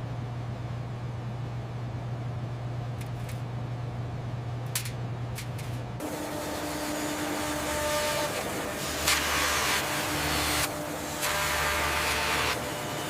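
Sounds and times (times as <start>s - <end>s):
factory machinery hum: 0.0s - 13.0s
machine hissing and whining: 6.0s - 13.0s.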